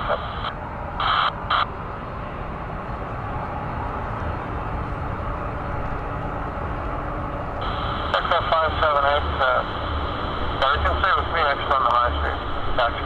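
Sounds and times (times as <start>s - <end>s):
air traffic control radio: 0.0s - 1.8s, 7.6s - 13.0s
aircraft engine noise: 0.0s - 13.0s.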